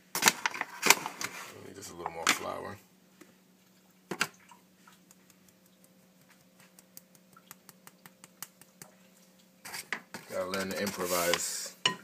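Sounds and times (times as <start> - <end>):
spoon clicking rapidly on bowl: 5.0 - 8.9.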